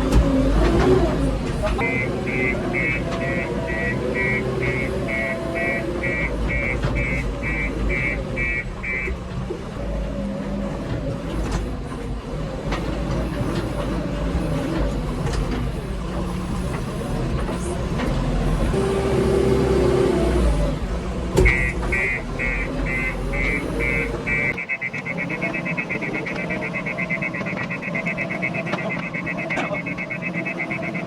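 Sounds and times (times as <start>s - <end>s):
diesel machinery rumbling: 0.0s - 31.0s
reversing alarm beeping: 1.8s - 9.2s, 21.4s - 31.0s.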